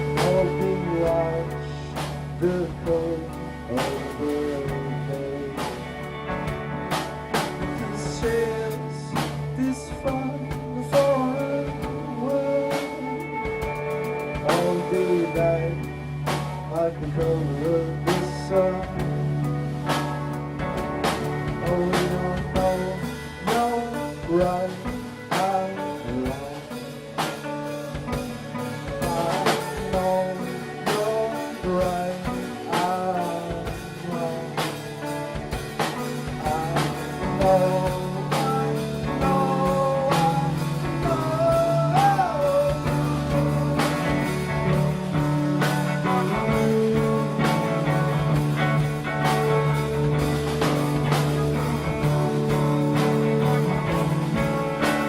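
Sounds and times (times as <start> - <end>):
electric guitar: 0.0 - 55.0
drum kit hits: 27.2 - 55.0.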